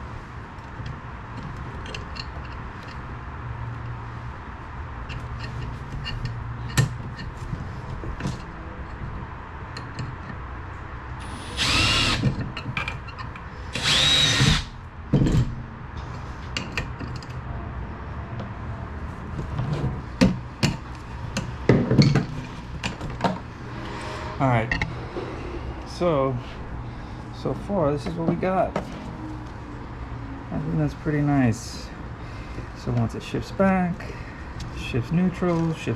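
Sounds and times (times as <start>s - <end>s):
power drill whining: 11.2s - 12.2s, 13.7s - 14.7s.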